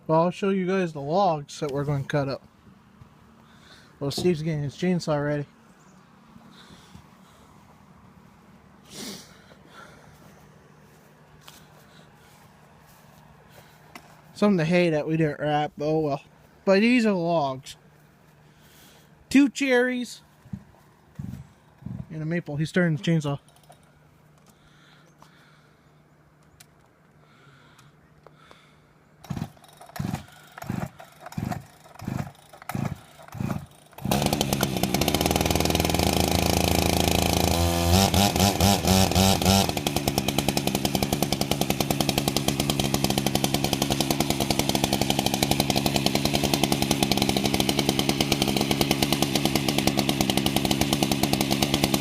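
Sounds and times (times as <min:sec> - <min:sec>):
chainsaw engine running: 0:01.0 - 0:05.5, 0:06.3 - 0:14.5, 0:28.4 - 0:52.0
chainsaw pull cord cranking: 0:23.4 - 0:24.6, 0:29.2 - 0:52.0.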